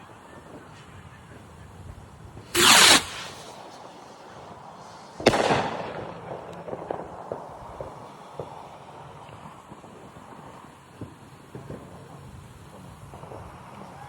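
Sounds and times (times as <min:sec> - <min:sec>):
firework hiss: 0:02.2 - 0:14.0
firework bang: 0:02.5 - 0:03.8, 0:05.2 - 0:07.9.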